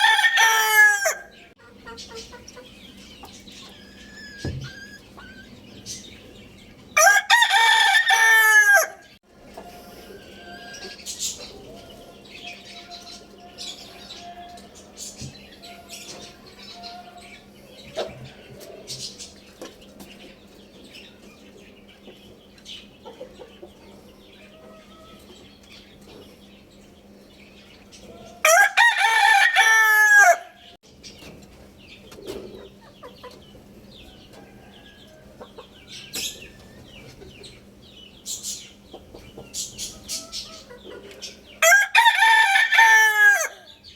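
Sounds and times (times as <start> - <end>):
rooster crowing: 0.0 - 1.5, 7.0 - 9.2, 28.4 - 30.7, 34.1 - 36.0, 41.6 - 43.8
hens clucking: 0.0 - 20.6, 21.3 - 26.4, 31.2 - 37.7, 38.8 - 43.6.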